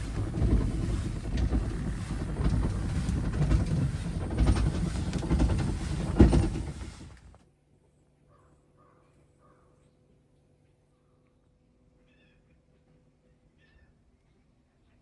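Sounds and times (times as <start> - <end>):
low uneven rumbling and rattling: 0.0 - 7.4.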